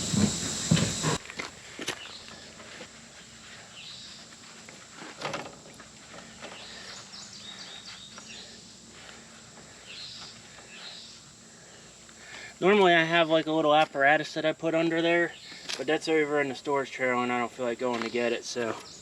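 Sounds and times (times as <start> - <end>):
faint steady hum: 0.0 - 19.0
birds chirping: 1.9 - 2.6, 3.2 - 4.3, 6.2 - 12.4.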